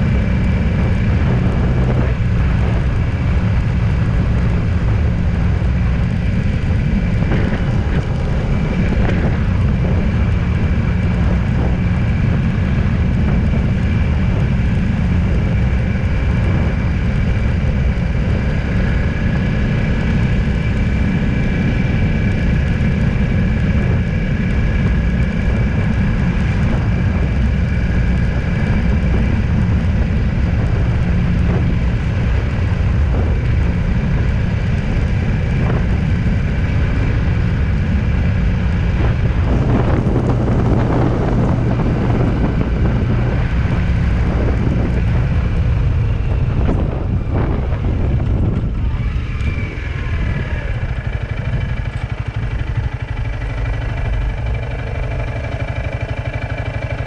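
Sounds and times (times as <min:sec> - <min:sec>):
vehicle engine and road rumble: 0:00.0 - 0:57.0.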